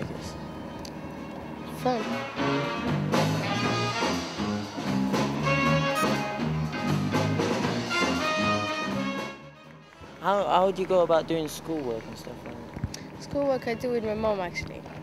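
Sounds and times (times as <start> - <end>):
swing tune with brass: 1.7 - 10.8
bass line: 1.8 - 10.0.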